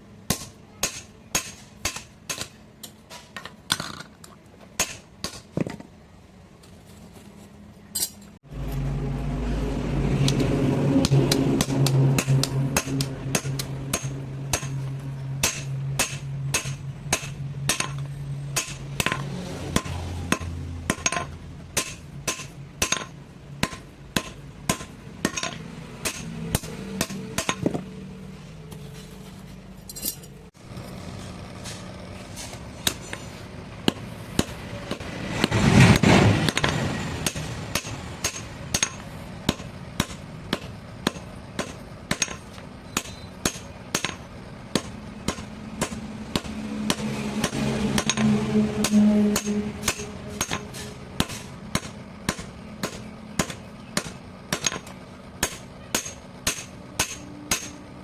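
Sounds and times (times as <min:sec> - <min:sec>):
steady low hum: 0:00.0 - 0:58.0
hammer striking metal: 0:00.3 - 0:03.8, 0:04.8 - 0:05.5, 0:10.2 - 0:28.1, 0:32.4 - 0:58.0.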